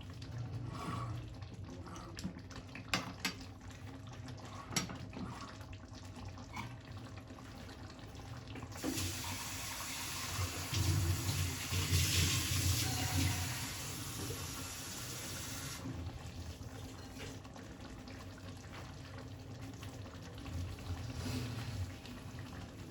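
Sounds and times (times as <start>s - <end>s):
faint kitchen background: 0.0s - 22.9s
water running: 2.6s - 17.4s.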